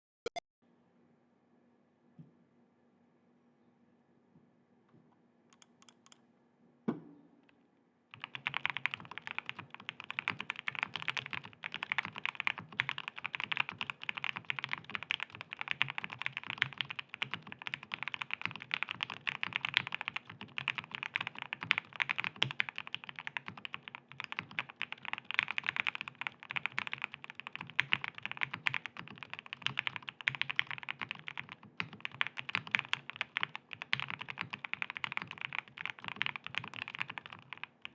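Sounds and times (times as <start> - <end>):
soft clicks: 5.5 - 6.2
mechanical keyboard typing: 5.6 - 6.2, 8.1 - 37.9.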